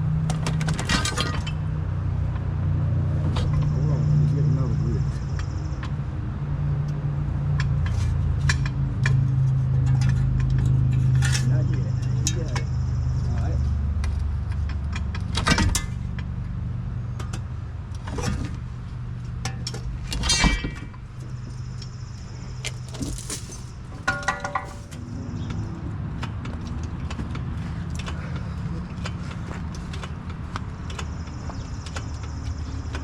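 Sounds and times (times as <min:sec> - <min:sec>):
tools clanking on steel: 0:22.6 - 0:25.0.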